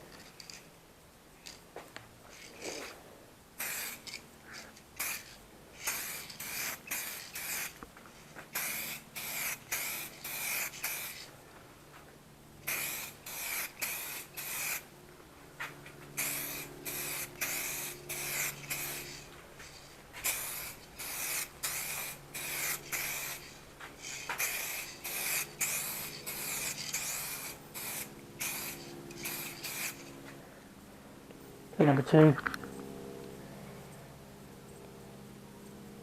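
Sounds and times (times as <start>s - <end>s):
aerosol can spraying: 3.6s - 4.2s, 4.8s - 7.8s, 8.4s - 11.3s, 12.6s - 14.8s, 16.1s - 30.1s.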